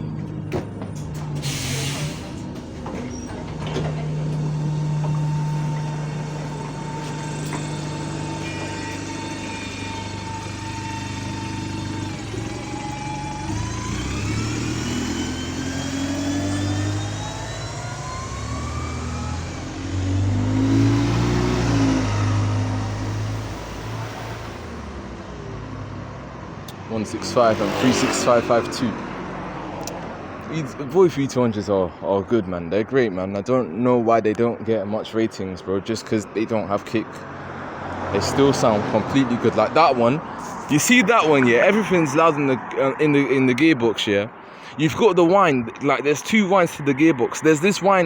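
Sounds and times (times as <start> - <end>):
bus engine idling: 0.0 - 20.3, 21.7 - 32.0
air brake hiss: 1.4 - 2.4
gearbox whine: 2.4 - 25.9.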